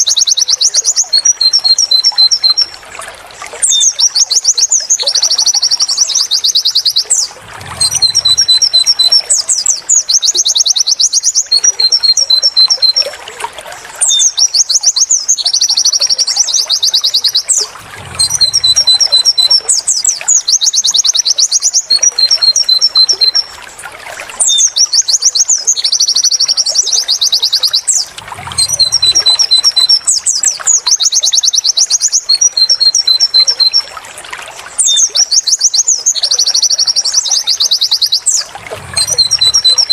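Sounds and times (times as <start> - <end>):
songbird trills and chirps: 0.0 - 2.7, 3.6 - 13.2, 14.0 - 23.6, 24.4 - 33.9, 34.8 - 39.9.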